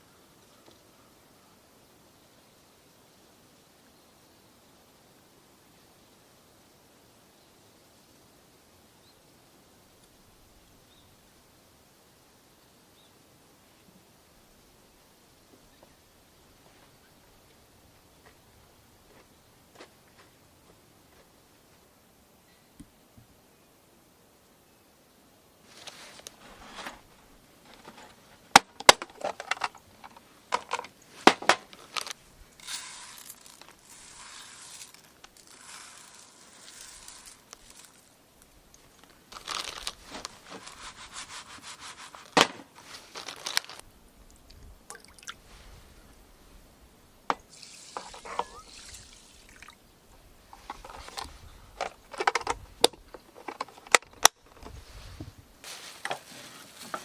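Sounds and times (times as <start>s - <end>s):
liquid pouring: 44.9s - 45.4s, 47.5s - 49.8s.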